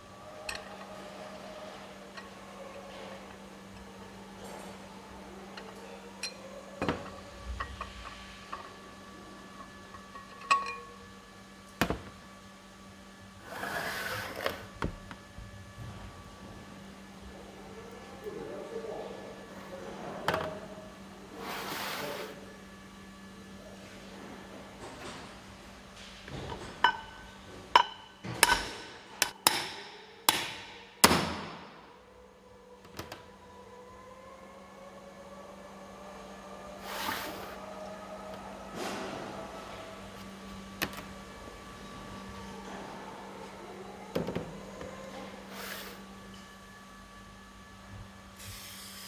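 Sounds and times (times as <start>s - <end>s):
hammer striking metal: 27.8s - 31.6s.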